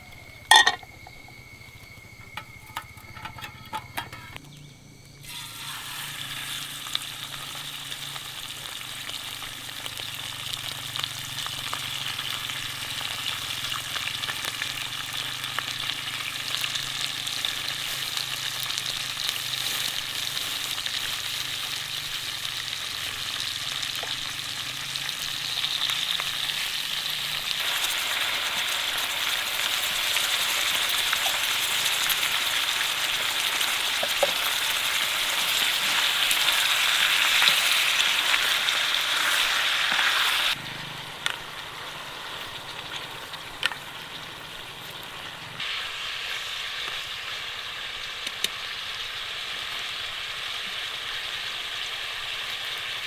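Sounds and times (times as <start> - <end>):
food sizzling in a pan: 5.2 - 53.0.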